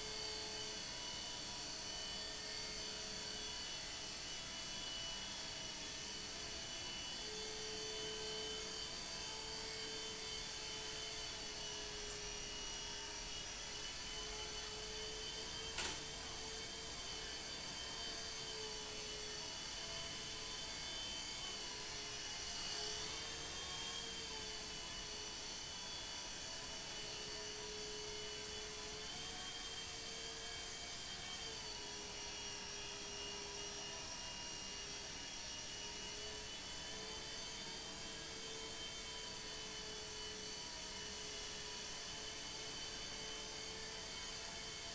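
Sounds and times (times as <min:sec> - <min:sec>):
rc helicopter motors whining: 0:00.0 - 0:44.9.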